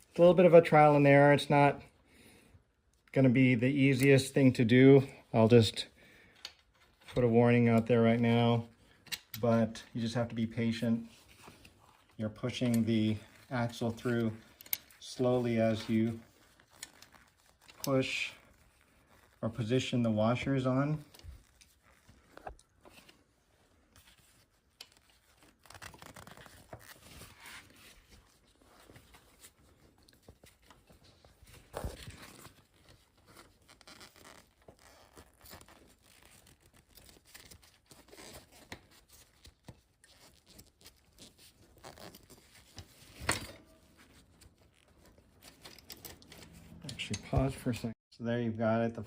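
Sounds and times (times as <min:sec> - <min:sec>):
metal parts scraping and clicking: 0:14.6 - 0:14.9.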